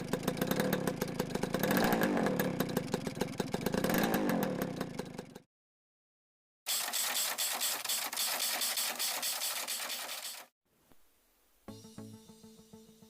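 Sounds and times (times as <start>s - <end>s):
two-stroke motorcycle engine revving: 0.0s - 5.5s, 6.7s - 10.5s.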